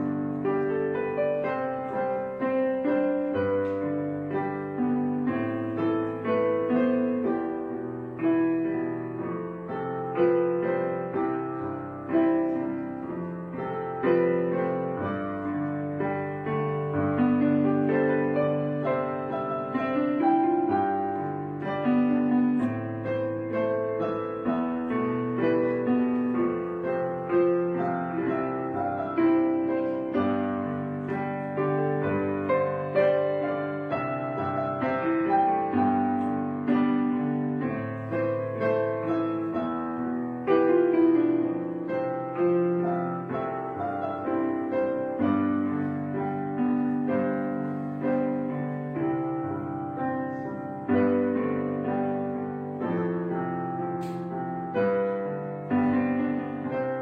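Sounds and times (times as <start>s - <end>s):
slow piano music: 0.0s - 57.0s.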